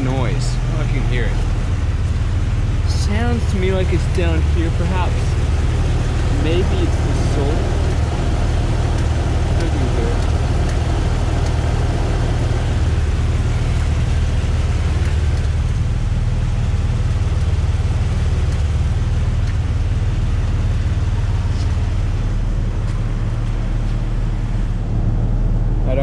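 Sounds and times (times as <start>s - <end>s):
car engine idling: 0.0s - 26.0s
faint irregular clicking: 7.9s - 11.7s, 18.4s - 19.7s.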